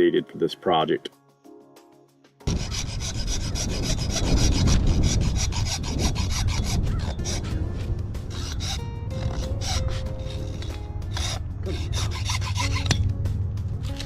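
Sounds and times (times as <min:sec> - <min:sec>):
saw cutting rod: 0:02.5 - 0:07.6, 0:08.3 - 0:13.0.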